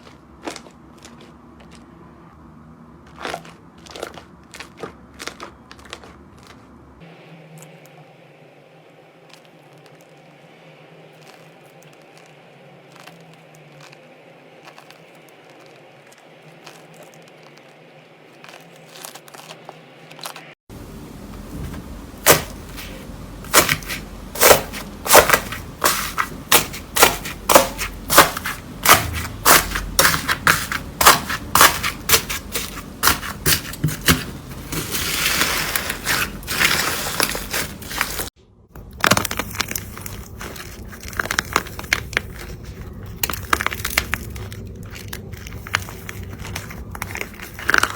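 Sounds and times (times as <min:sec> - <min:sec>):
slime popping and crackling: 0:03.2 - 0:06.6, 0:12.9 - 0:20.6, 0:22.2 - 0:47.9.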